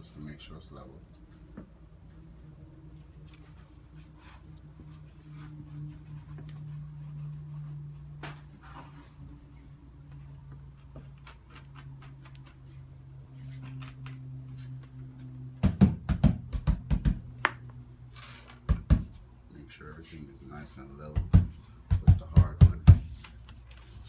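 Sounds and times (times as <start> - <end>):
steady low hum: 0.0 - 24.0
tile tapped by hand: 15.6 - 17.6, 18.7 - 19.2, 21.2 - 23.2.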